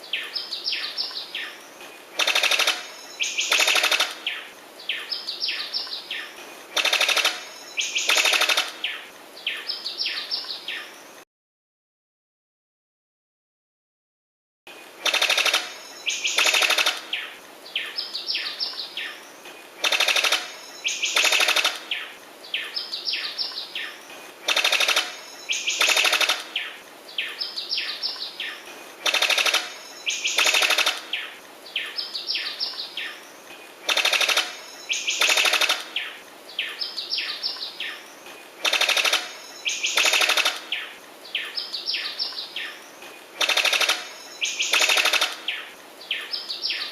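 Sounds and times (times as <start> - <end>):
bird rattling call: 2.2 - 4.5, 6.8 - 9.0, 15.0 - 17.3, 19.8 - 22.1, 24.4 - 26.8, 27.7 - 31.4, 33.8 - 36.2, 38.6 - 41.0, 43.4 - 45.7.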